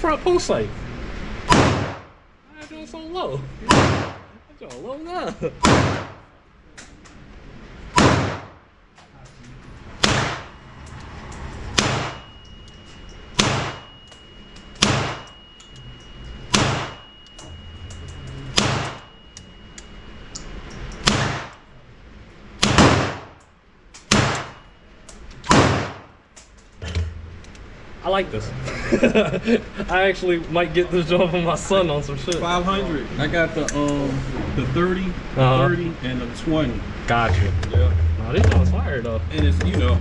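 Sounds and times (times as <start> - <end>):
gunshots echoing indoors: 1.5 - 2.2, 3.7 - 4.3, 5.6 - 6.3, 7.9 - 8.6, 9.9 - 10.6, 11.7 - 12.3, 13.3 - 14.0, 14.7 - 15.4, 16.5 - 17.1, 18.5 - 19.1, 21.0 - 21.6, 22.6 - 23.4, 24.0 - 24.7, 25.4 - 26.2.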